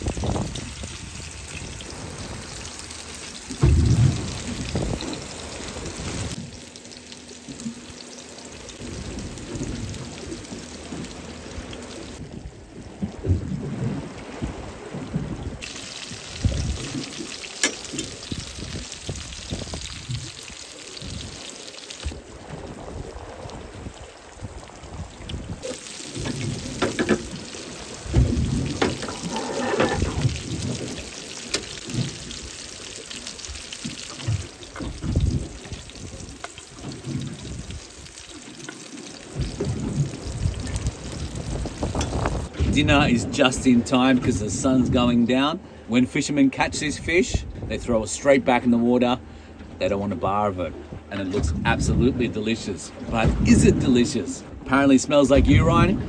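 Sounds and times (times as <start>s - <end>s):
wind on microphone: 0.0s - 2.7s, 3.5s - 6.5s, 8.8s - 17.2s, 17.9s - 21.4s, 22.0s - 31.2s, 31.8s - 38.2s, 39.3s - 45.2s, 50.8s - 52.5s, 53.1s - 54.7s, 55.3s - 56.0s
fish frying in a pan: 15.6s - 22.1s, 25.6s - 42.5s.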